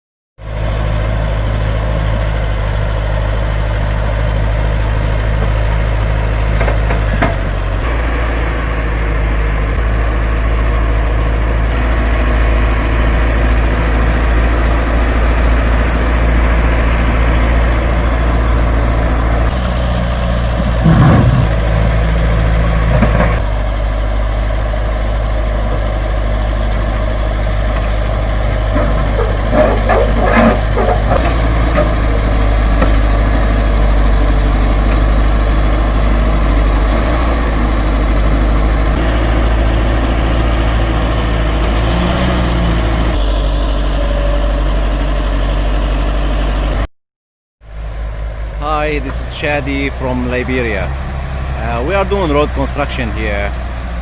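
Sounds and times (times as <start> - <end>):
heavy machine engine running: 0.4 - 46.9, 47.6 - 54.0
metal knocks and clanks: 28.7 - 32.1.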